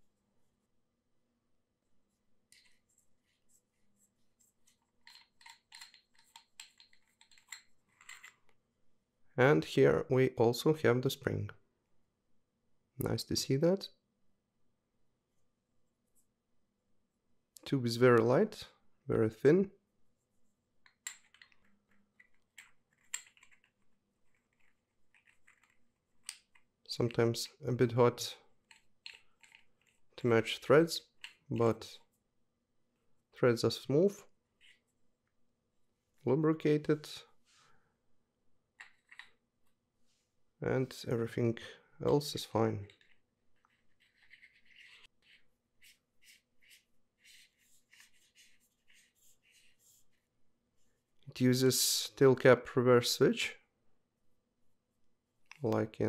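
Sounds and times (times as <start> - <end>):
metal parts clicking and scraping: 4.7 - 8.5
metal threads scratching: 42.9 - 50.2.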